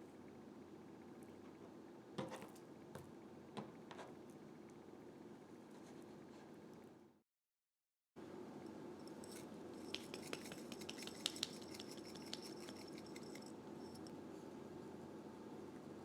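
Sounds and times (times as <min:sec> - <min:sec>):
utensils clicking and scratching: 0:09.2 - 0:14.1.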